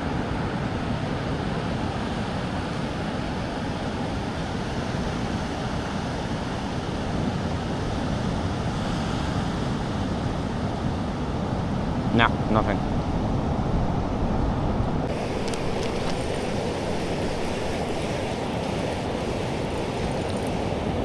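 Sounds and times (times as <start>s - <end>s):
waves breaking on beach: 0.0s - 11.8s, 15.0s - 21.0s
wind noise on microphone: 12.8s - 21.0s.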